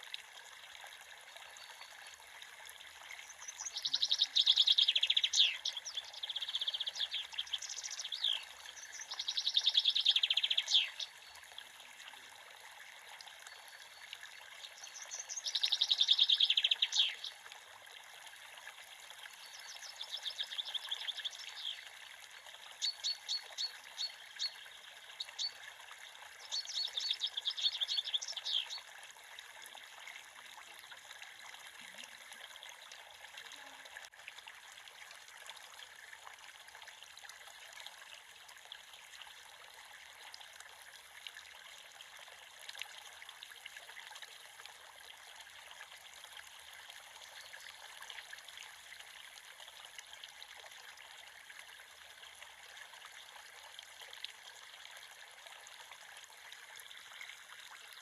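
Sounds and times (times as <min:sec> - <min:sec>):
creek water trickling: 0:00.0 - 0:58.0
songbird trilling: 0:03.6 - 0:11.1, 0:15.0 - 0:17.2.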